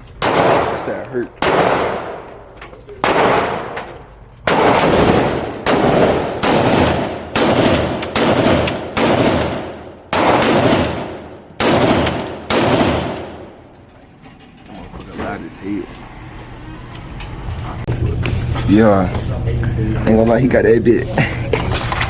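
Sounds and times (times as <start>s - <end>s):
rifle shots echoing: 0.0s - 13.8s.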